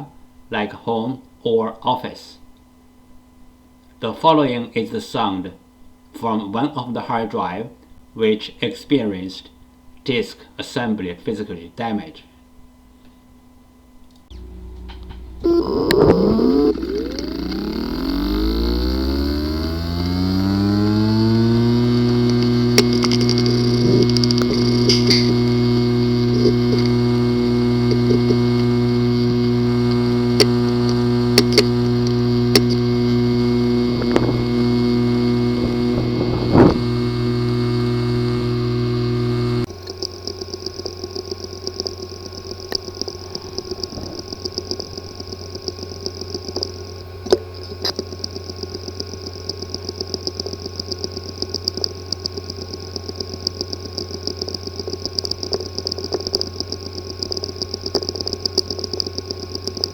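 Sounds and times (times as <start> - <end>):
hard drive whine: 12.1 - 59.9
hard drive humming: 12.6 - 59.9
hard drive clicks: 14.2 - 59.9
rapid irregular ticking: 14.3 - 59.9.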